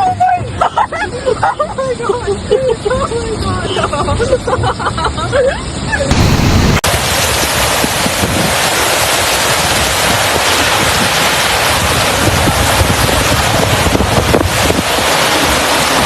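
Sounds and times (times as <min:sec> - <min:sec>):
steady rushing noise: 0:00.0 - 0:16.0
wind buffeting microphone: 0:06.1 - 0:16.0.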